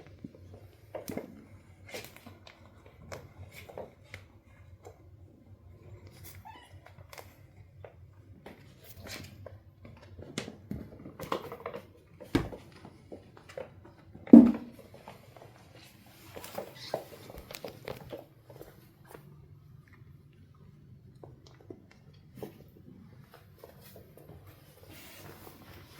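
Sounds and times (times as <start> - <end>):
kittens play-fighting scuffles: 14.8 - 19.3.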